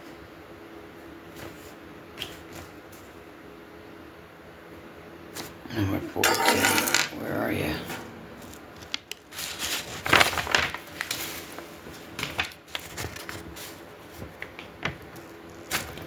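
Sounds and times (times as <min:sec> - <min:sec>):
packaging rustling and crinkling: 0:08.8 - 0:16.0.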